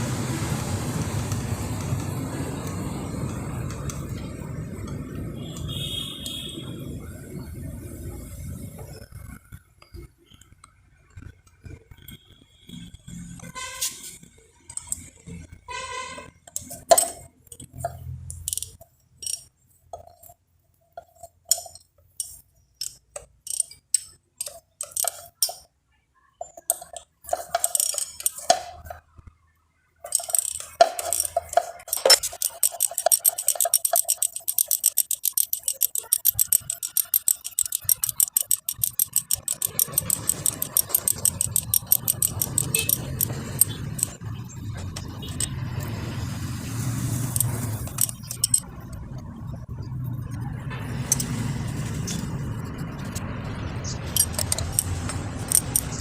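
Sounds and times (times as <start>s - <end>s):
metal tools and parts clinking: 12.0s - 25.8s, 26.4s - 29.0s, 30.0s - 46.0s, 47.2s - 56.0s
ratchet wrench clicking rapidly: 14.7s - 15.3s, 16.5s - 19.5s, 21.5s - 25.6s, 26.7s - 28.9s, 30.0s - 46.0s, 47.0s - 49.1s, 51.0s - 51.4s, 53.8s - 56.0s.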